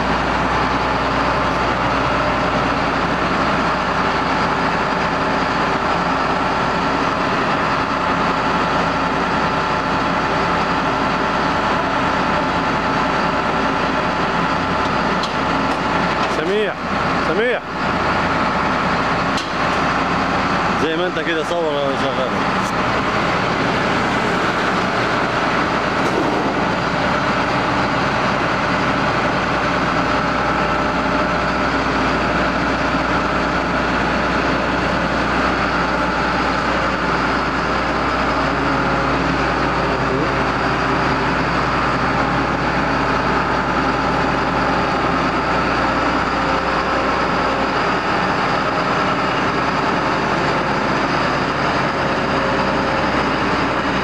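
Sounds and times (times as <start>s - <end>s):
combine harvester droning: 0.0s - 54.0s.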